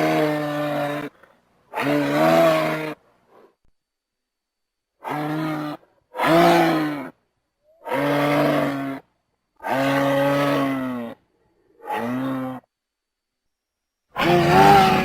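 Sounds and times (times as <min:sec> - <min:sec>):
dinosaur roaring calls: 0:14.2 - 0:15.0.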